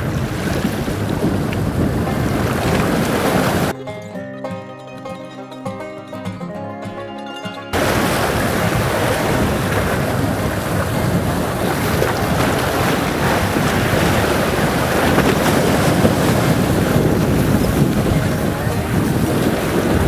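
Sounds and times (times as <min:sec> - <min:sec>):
sea water at shore: 0:00.0 - 0:03.8, 0:07.7 - 0:20.0
wind noise on microphone: 0:00.0 - 0:03.8, 0:07.8 - 0:20.0.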